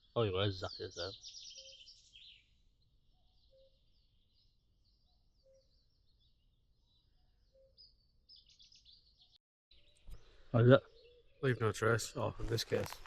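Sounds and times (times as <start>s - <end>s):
high bird twittering: 0.0s - 6.3s.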